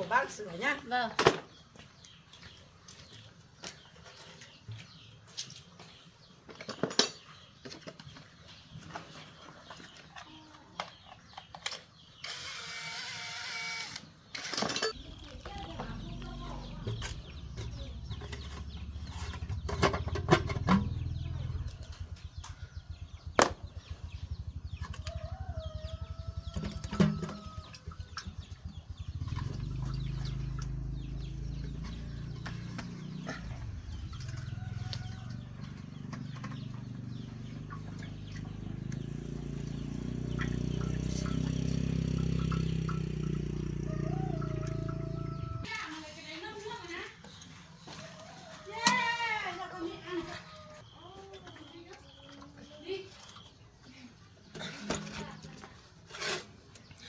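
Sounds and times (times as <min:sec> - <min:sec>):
small petrol engine running: 0:12.2 - 0:45.8
chickens clucking: 0:14.9 - 0:45.9
rooster crowing: 0:24.8 - 0:28.3, 0:33.7 - 0:35.8, 0:42.6 - 0:45.9.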